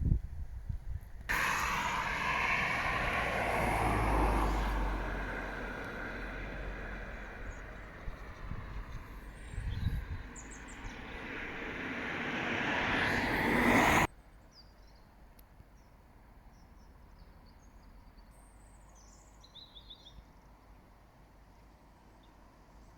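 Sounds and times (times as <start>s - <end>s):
vehicle noise: 1.3s - 14.1s.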